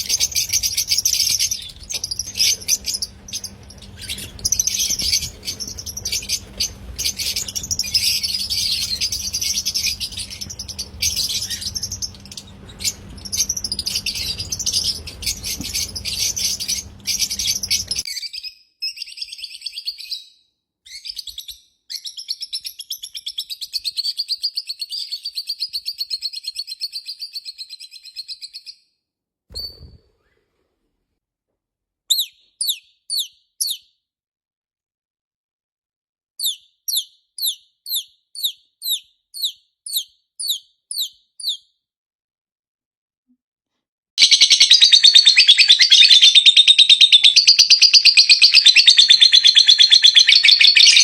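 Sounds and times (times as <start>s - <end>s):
low background hum: 0.0s - 18.1s
lovebirds chirping: 0.0s - 18.2s, 44.2s - 51.0s.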